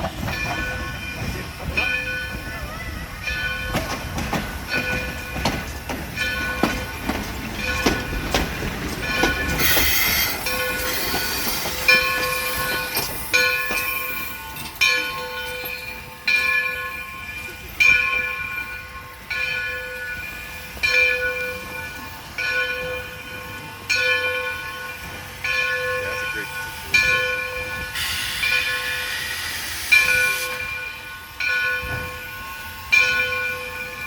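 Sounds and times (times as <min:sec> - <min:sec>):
locomotive bell ringing: 0:00.0 - 0:34.0
steam hiss: 0:09.4 - 0:14.7, 0:27.8 - 0:31.0.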